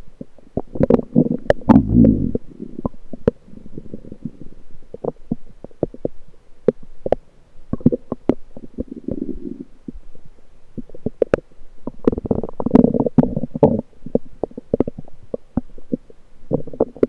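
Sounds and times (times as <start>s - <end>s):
bowel gurgling rumbles: 1.7s - 2.4s.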